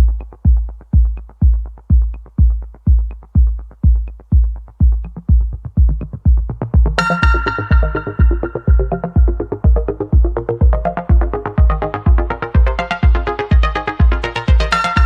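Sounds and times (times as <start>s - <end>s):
light ticks: 0.0s - 5.3s
heavy kick drum thumping: 0.0s - 15.0s
bright synth chord: 7.0s - 9.6s.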